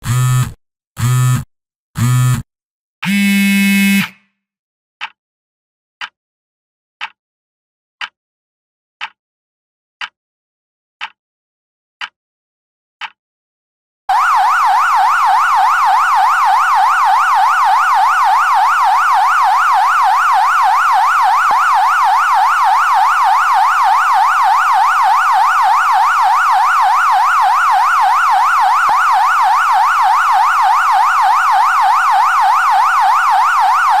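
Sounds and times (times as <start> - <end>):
warbling timer alarm: 14.1 - 34.0.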